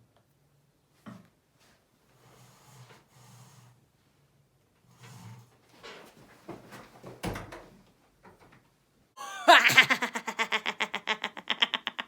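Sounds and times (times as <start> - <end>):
rhythmic cackling laughter: 9.3 - 12.0.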